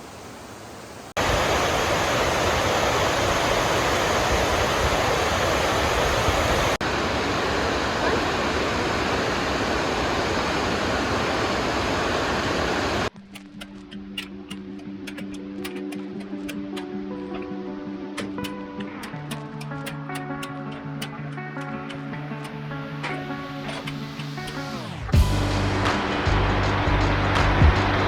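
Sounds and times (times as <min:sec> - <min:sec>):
waterfall rushing: 0:00.0 - 0:13.1
music: 0:13.1 - 0:28.0.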